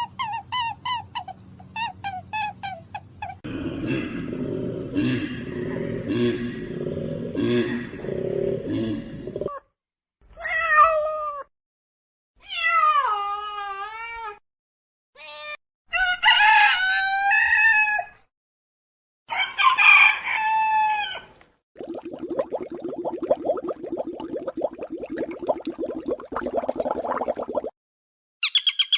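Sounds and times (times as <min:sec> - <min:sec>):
rooster crowing: 0:15.9 - 0:18.2, 0:19.3 - 0:21.3.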